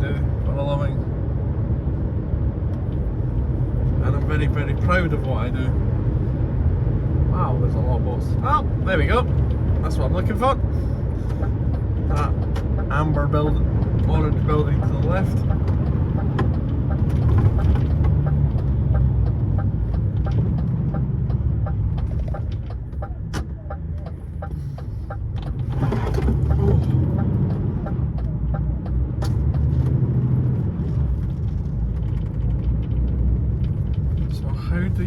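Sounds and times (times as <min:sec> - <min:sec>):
diesel lorry engine running: 0:00.0 - 0:35.0.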